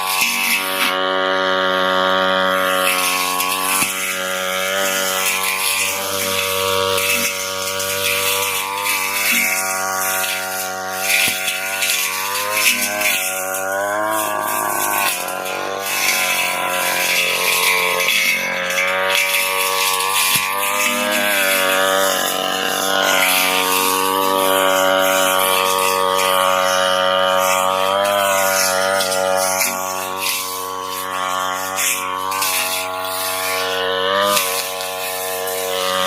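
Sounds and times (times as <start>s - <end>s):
blade cutting grass: 0.0s - 36.0s
brush cutter engine revving: 0.0s - 36.0s.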